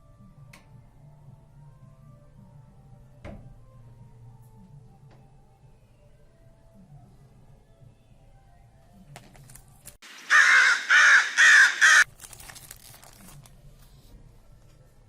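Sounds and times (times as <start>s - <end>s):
crow cawing: 10.2s - 12.1s.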